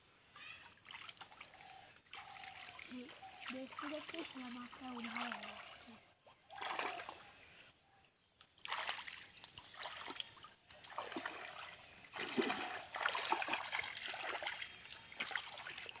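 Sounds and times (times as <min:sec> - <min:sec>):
shallow water splashing: 0:00.8 - 0:07.3, 0:08.6 - 0:16.0.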